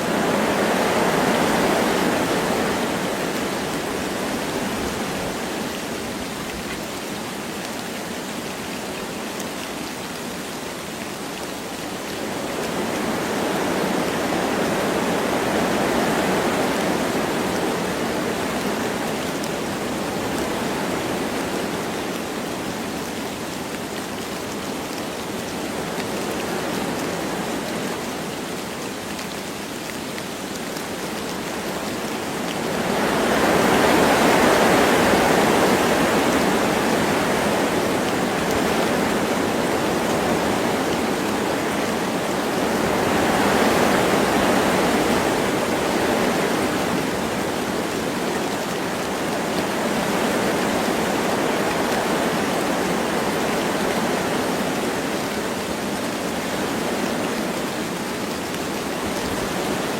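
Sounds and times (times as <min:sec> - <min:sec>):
light rain: 0:00.0 - 0:59.9
wind through trees: 0:00.0 - 0:59.9.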